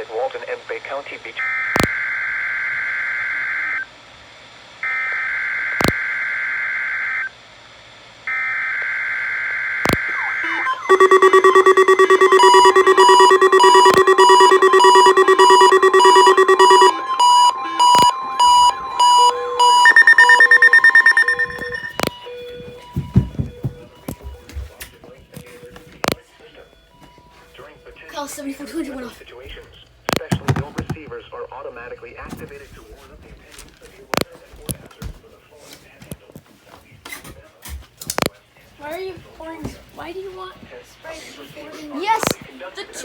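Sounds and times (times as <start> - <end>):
loud steady alarm tone: 8.3 - 24.4
rapid alarm beeping: 10.4 - 24.5
warbling digital data tones: 10.9 - 22.1.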